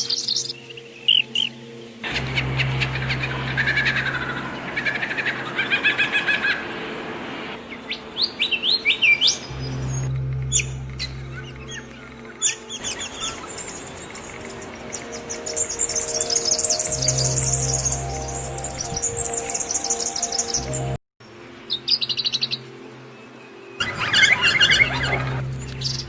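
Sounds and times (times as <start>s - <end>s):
songbirds chirping: 0.0s - 26.0s
steady low hum: 1.6s - 5.6s, 9.3s - 19.9s.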